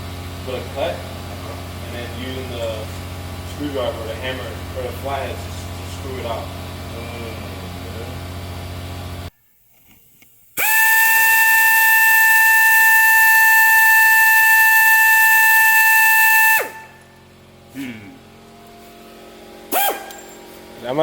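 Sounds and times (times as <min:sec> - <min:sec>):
steady hum: 0:00.0 - 0:21.0
cut-off wheel whining: 0:10.6 - 0:17.3.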